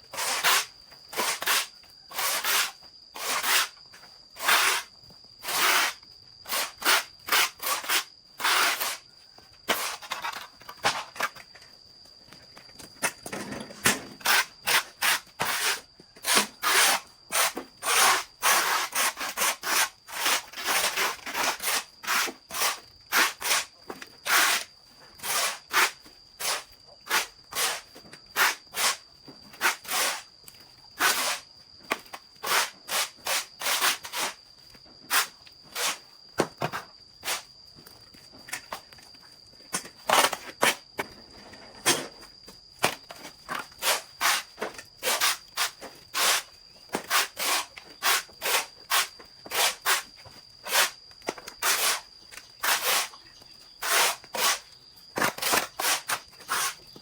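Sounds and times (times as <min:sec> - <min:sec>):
hand saw cutting wood: 0:00.2 - 0:03.7, 0:04.4 - 0:09.0, 0:14.2 - 0:23.6, 0:24.3 - 0:24.6, 0:25.2 - 0:27.8, 0:29.6 - 0:30.2, 0:31.0 - 0:31.4, 0:43.8 - 0:51.0, 0:51.6 - 0:52.0, 0:52.6 - 0:53.2, 0:53.8 - 0:54.6, 0:55.3 - 0:56.8.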